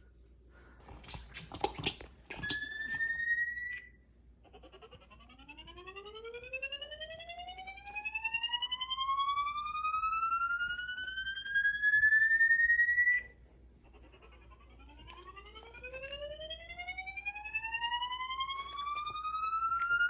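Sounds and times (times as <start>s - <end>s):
siren wailing upward: 5.2s - 13.4s, 14.4s - 20.0s.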